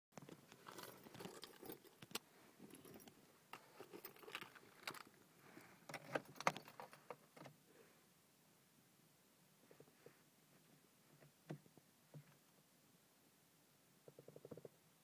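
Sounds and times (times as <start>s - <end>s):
car keys jangling: 0.6s - 3.2s.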